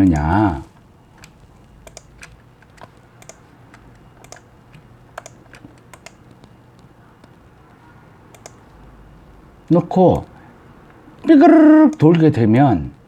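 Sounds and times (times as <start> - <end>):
faint low hum: 0.0 - 13.0
mouse and keyboard clicks: 0.1 - 8.8.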